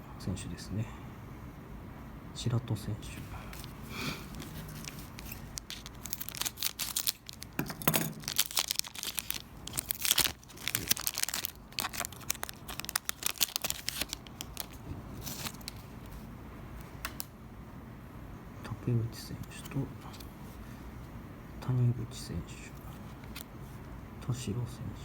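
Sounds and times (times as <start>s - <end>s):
card pack wrapper tearing: 3.5s - 15.9s.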